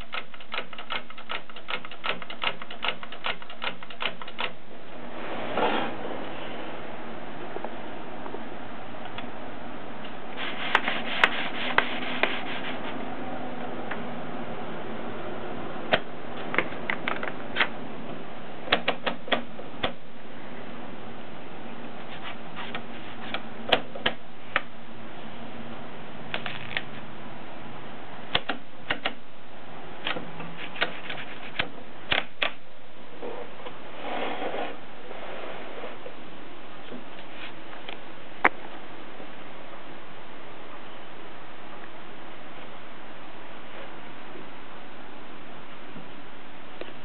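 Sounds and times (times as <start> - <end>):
typewriter clacks: 0.0 - 4.6.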